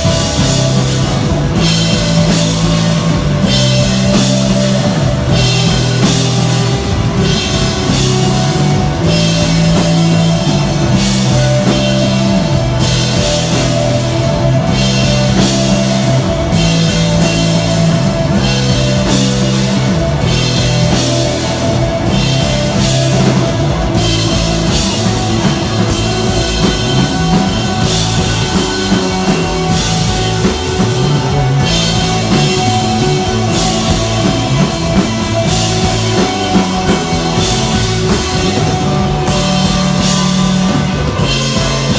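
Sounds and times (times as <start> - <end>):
bass line low notes: 0.0 - 41.9
rock band playing: 0.0 - 41.9.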